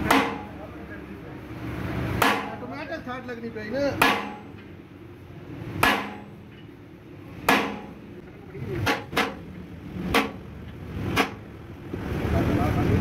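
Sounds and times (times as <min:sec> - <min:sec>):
hammer striking metal: 0:00.0 - 0:00.8, 0:02.1 - 0:02.8, 0:03.9 - 0:04.7, 0:05.7 - 0:06.8, 0:07.4 - 0:08.0, 0:08.8 - 0:09.4, 0:10.0 - 0:10.4, 0:11.1 - 0:11.4.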